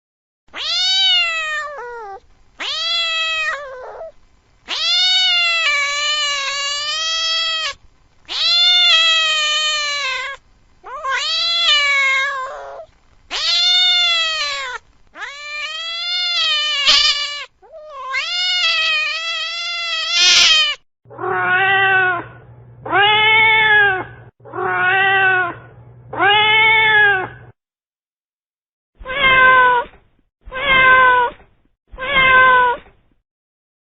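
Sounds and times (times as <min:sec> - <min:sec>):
cat yowling: 0:00.5 - 0:27.4, 0:29.0 - 0:29.9, 0:30.5 - 0:31.4, 0:32.0 - 0:32.8
low hum: 0:22.1 - 0:24.3, 0:25.3 - 0:26.5.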